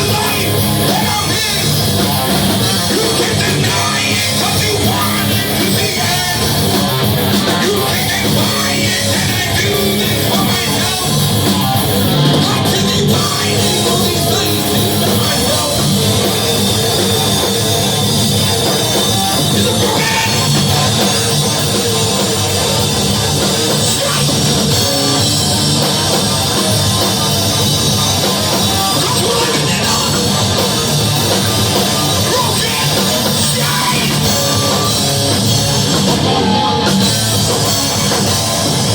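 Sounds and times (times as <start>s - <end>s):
distorted guitars: 0.0s - 38.9s
drums: 0.0s - 38.9s
shouted vocals: 31.4s - 35.1s.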